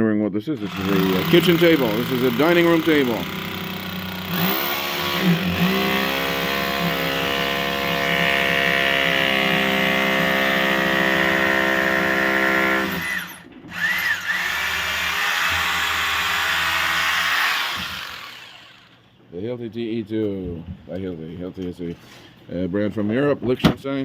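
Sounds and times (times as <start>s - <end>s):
rotary hammer drill drilling: 0.6s - 19.0s.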